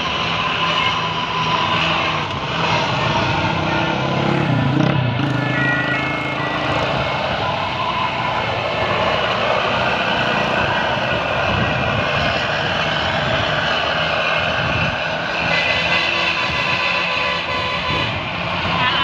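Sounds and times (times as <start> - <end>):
vehicle engines droning: 0.0 - 19.0
wind rush: 6.0 - 15.5.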